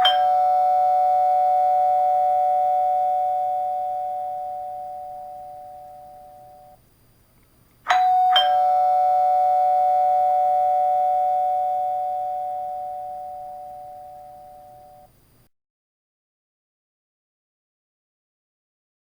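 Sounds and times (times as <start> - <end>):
doorbell ding-dong chime: 0.0 - 6.8, 7.9 - 15.1.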